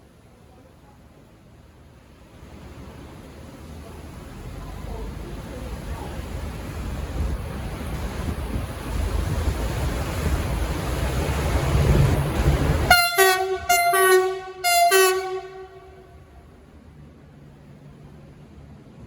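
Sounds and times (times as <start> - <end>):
diesel railcar engine and rail rumble: 0.0 - 19.0
train horn blasts: 12.9 - 16.3.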